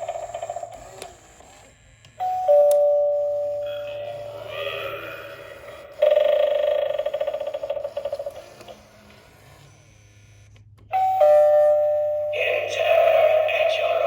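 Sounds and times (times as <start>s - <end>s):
pulsing electronic tone: 2.3s - 14.0s
two-note ding-dong chime: 10.9s - 12.4s.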